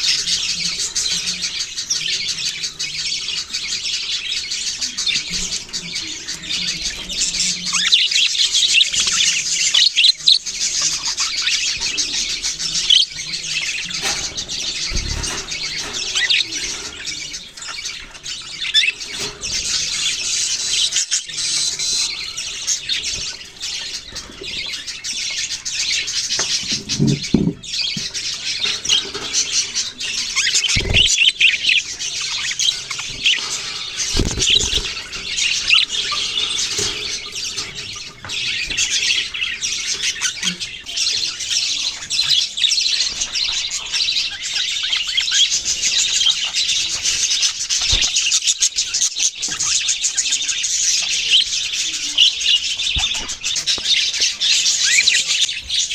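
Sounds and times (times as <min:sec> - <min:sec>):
budgerigars chirping and chattering: 0:00.0 - 0:55.9
low thumps: 0:26.6 - 0:27.8.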